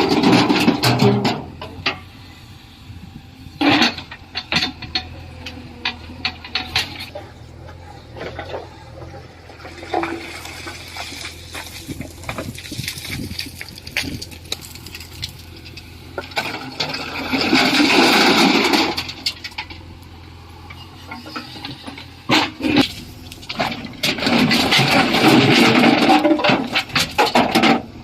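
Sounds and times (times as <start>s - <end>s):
sharp knocks and clatter: 21.2s - 27.9s.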